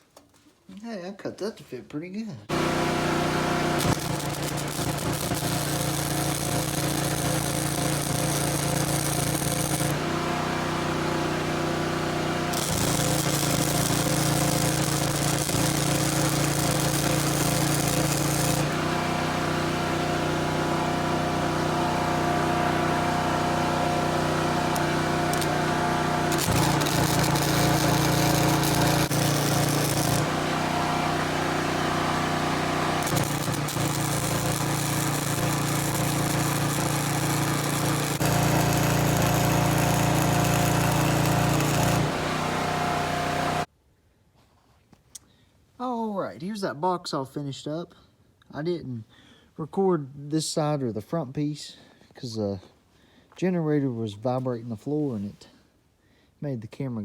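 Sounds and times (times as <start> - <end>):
welding arc crackling: 2.5 - 10.1, 12.2 - 19.0, 24.2 - 31.3, 32.2 - 43.7
generator engine humming: 2.5 - 43.7.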